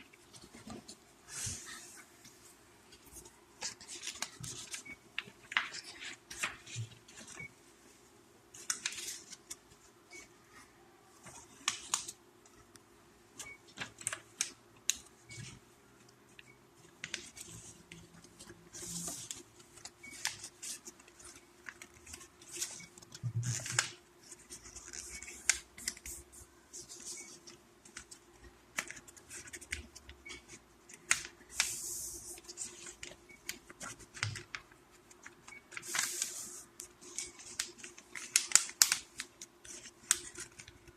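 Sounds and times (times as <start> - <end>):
paper crackling and rustling: 3.0 - 7.4, 32.4 - 40.9.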